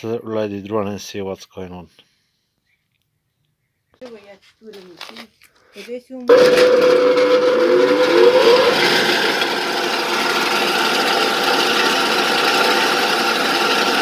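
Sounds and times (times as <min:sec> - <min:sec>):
electric saw motor starting up: 0:06.3 - 0:14.0.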